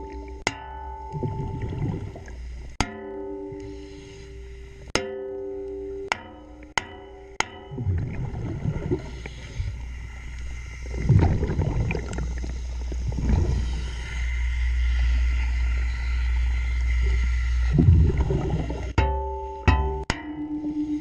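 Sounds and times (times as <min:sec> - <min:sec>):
exhaled bubbles underwater: 0:01.1 - 0:02.4, 0:07.7 - 0:09.8, 0:10.8 - 0:14.1, 0:17.0 - 0:19.0
steady low rumble: 0:07.7 - 0:19.0.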